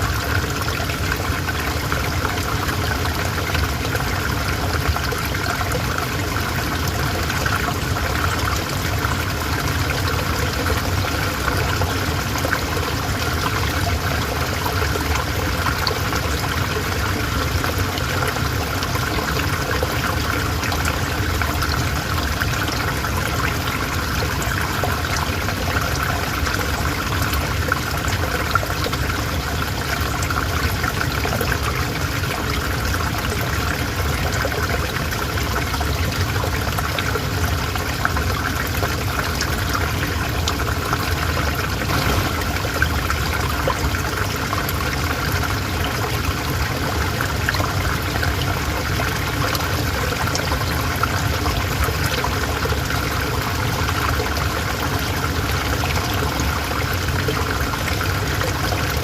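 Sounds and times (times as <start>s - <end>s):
river water flowing: 0.0s - 59.0s.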